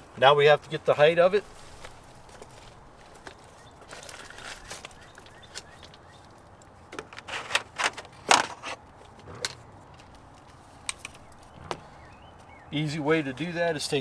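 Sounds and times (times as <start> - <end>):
clicks and knocks of tools handled: 3.2 - 11.8.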